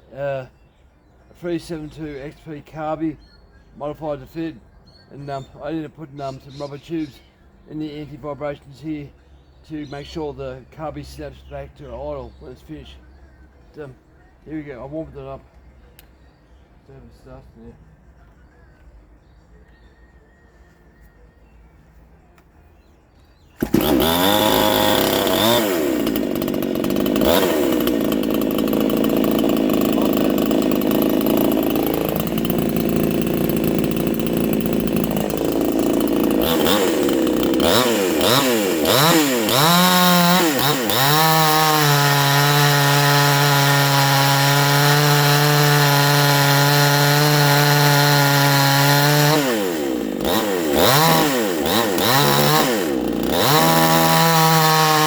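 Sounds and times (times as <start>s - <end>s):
chainsaw engine revving: 23.6s - 55.0s.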